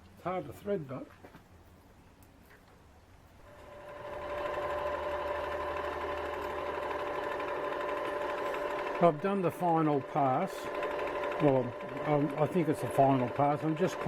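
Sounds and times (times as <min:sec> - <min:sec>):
mini lathe motor whine: 0:03.5 - 0:14.0.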